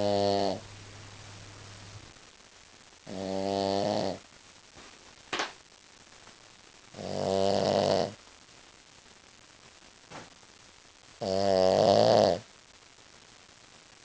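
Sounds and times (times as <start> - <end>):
dog snoring: 0.0 - 0.7, 3.0 - 4.2, 6.9 - 8.2, 11.2 - 12.5.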